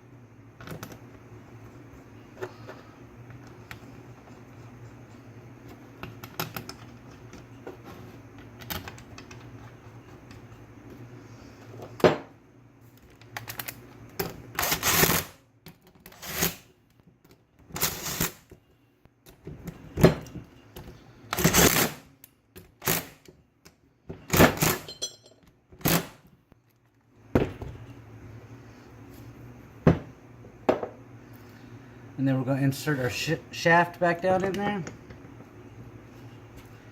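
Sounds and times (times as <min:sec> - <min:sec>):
metal parts clinking and knocking: 0:24.8 - 0:25.5.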